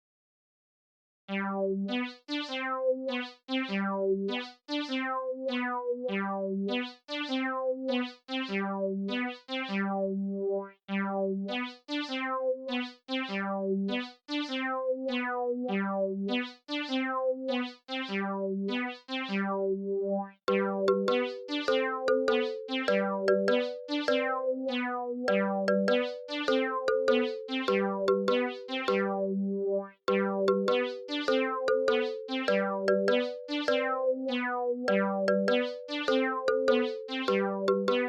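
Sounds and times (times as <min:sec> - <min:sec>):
synthesizer keyboard tune: 0:20.5 - 0:38.0.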